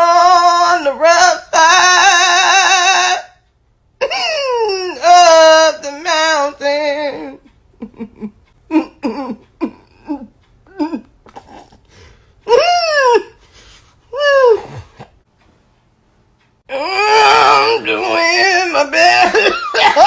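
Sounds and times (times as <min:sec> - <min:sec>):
person giggling: 0:07.2 - 0:11.8, 0:14.2 - 0:15.0, 0:17.6 - 0:20.0.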